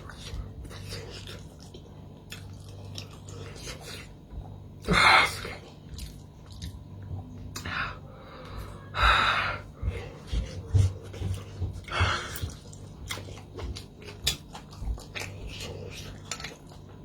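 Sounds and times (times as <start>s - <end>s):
chewing and mouth clicks: 0.0s - 4.6s, 5.3s - 7.7s, 9.9s - 17.0s
steady low hum: 0.0s - 17.0s.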